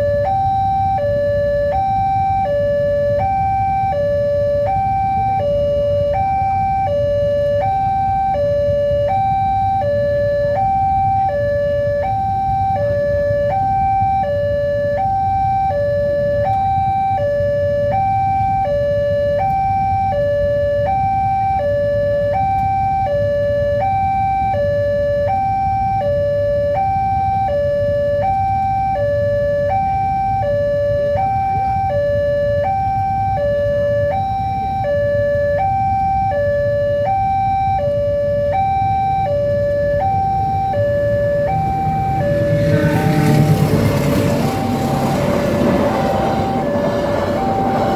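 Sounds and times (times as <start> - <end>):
level crossing alarm: 0.0 - 47.9
low rumble: 40.2 - 47.9.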